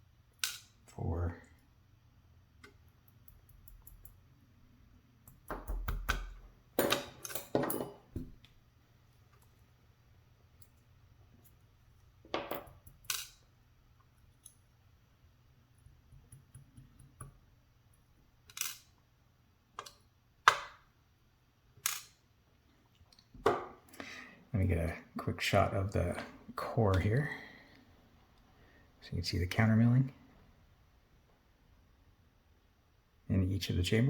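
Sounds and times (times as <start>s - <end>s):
small metal parts clicking and clattering: 12.3s - 13.5s, 18.5s - 18.9s.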